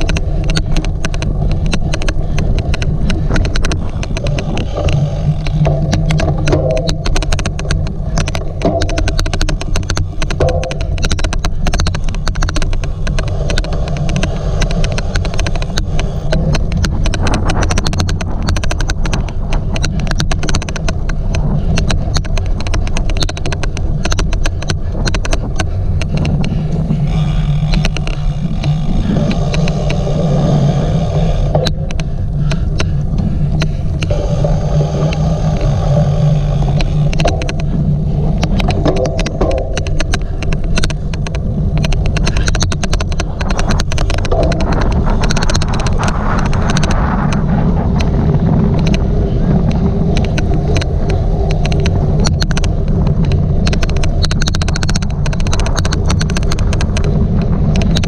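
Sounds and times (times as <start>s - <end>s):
fast irregular bike clicking: 0.0s - 58.0s
pitched hum: 0.0s - 58.0s
wind and rolling rumble: 0.0s - 58.0s.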